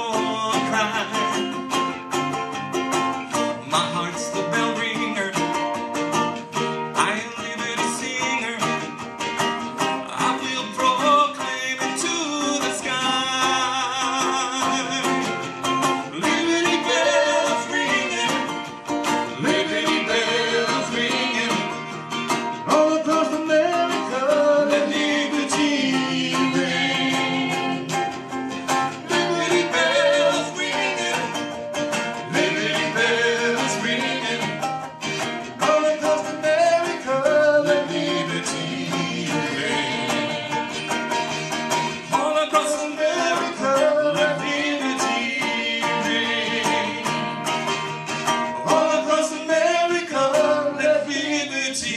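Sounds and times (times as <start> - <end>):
person singing: 0.0 - 1.8, 3.3 - 5.8, 6.9 - 9.0, 10.0 - 51.9
guitar accompaniment: 0.0 - 51.9.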